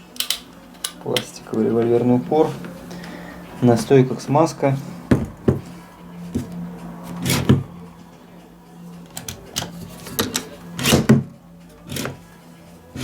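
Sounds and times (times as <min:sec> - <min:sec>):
steady low hum: 0:00.0 - 0:13.0
plastic and metal parts clicking: 0:00.2 - 0:01.3.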